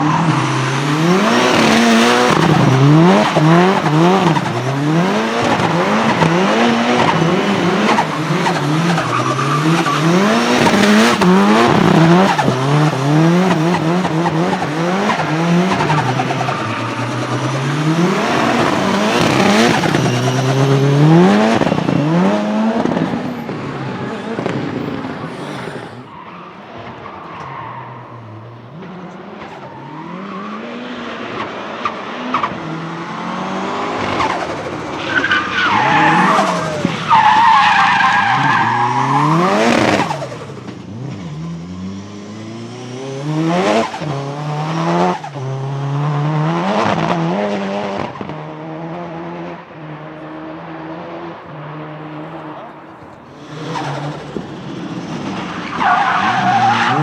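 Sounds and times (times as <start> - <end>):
tyres squealing: 0.0 - 21.2, 34.0 - 40.4
turbocharged engine revving: 0.0 - 57.0.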